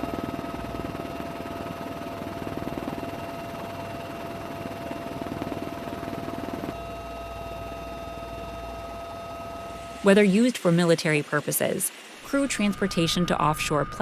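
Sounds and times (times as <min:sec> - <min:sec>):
helicopter rotor chop: 0:00.0 - 0:06.8
turbine whine: 0:00.0 - 0:14.0.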